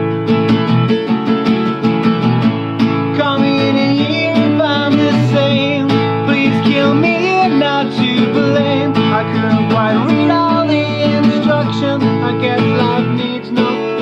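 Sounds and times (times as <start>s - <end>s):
acoustic guitar strumming: 0.0s - 14.0s
man singing: 3.0s - 14.0s.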